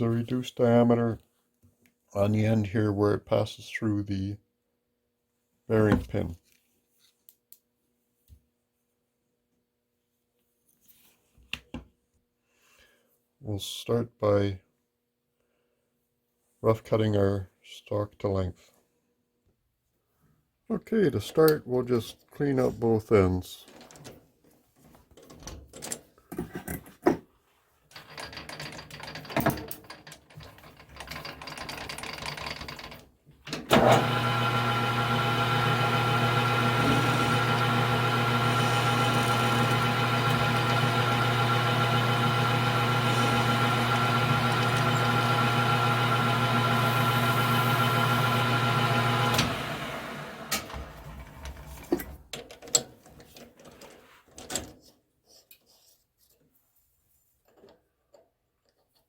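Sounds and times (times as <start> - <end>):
tools clicking and clattering: 27.9 - 33.1
metal lathe humming: 33.7 - 51.3.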